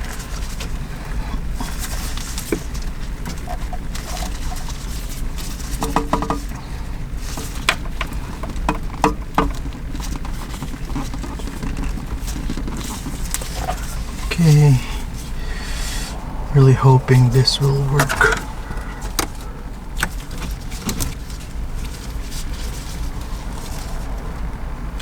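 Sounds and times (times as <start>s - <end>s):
steady low hum: 12.2s - 25.0s.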